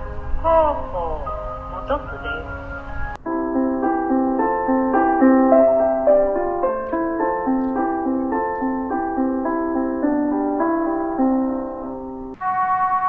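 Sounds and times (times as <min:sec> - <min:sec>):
keyboard chime melody over loudspeakers: 0:00.0 - 0:03.2.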